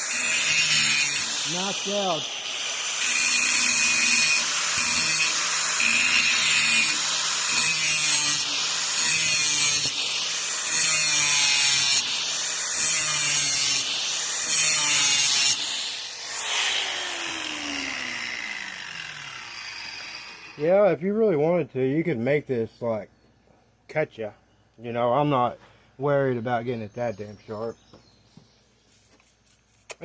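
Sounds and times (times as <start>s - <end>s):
grinder sharpening metal blade: 0.0s - 15.9s
grinder motor hum: 0.0s - 20.6s.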